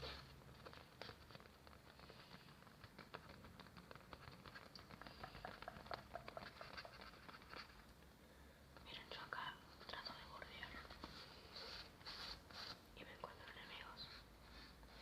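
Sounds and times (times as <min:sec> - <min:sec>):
small clicks and light taps: 0:00.4 - 0:08.1.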